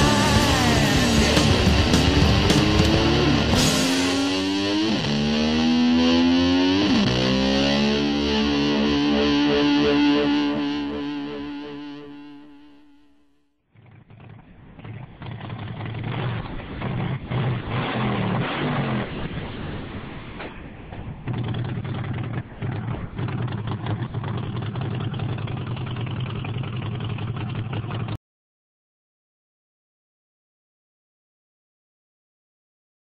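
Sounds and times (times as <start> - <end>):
motorcycle engine revving and idling: 0.0 - 13.1, 13.7 - 19.5, 21.0 - 28.2.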